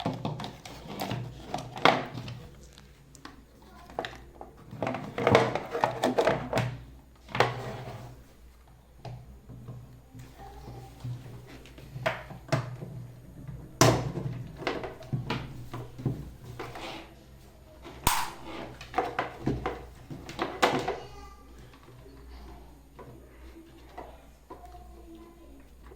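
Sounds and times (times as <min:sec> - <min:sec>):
plastic parts clicking and knocking: 0:00.0 - 0:07.7, 0:11.6 - 0:16.8, 0:18.0 - 0:22.0.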